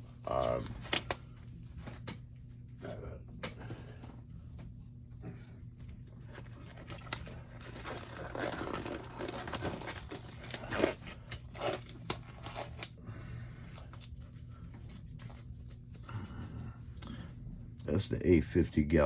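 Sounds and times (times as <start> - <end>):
crinkling and rustling: 5.7 - 13.0.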